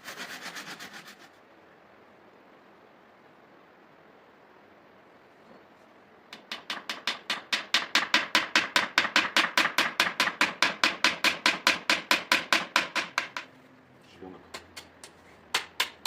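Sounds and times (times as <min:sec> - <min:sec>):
rapid sharp knocks: 0:06.3 - 0:13.5, 0:14.5 - 0:16.0.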